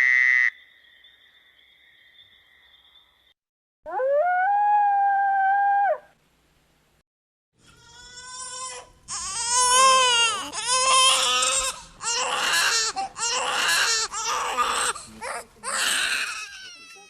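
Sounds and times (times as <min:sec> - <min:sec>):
baby crying: 0:07.7 - 0:17.0.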